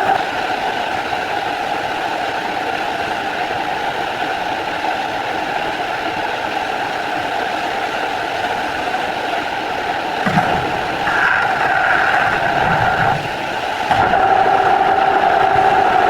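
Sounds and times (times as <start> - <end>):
milling machine humming: 10.2 - 16.0.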